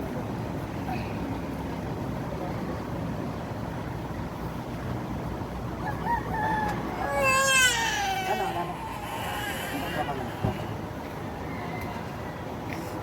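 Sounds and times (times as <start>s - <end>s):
baby whimpering: 7.0s - 10.8s.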